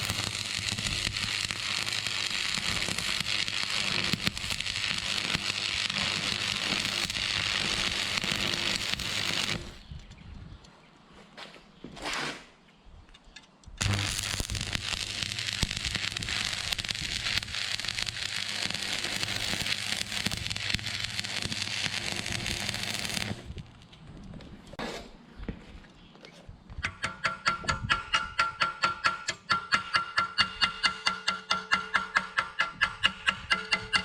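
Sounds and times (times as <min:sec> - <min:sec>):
arc welding crackle: 0:00.0 - 0:09.8, 0:13.8 - 0:23.9.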